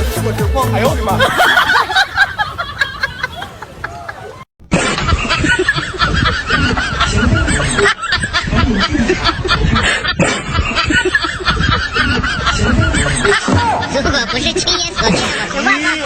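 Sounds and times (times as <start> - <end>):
snickering chuckling laughter: 1.2 - 13.5.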